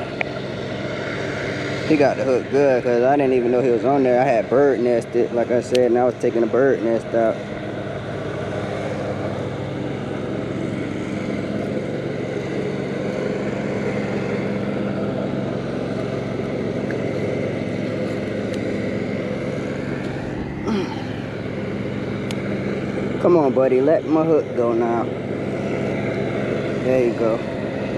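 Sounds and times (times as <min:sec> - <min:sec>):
mechanical drone: 0:00.0 - 0:27.9.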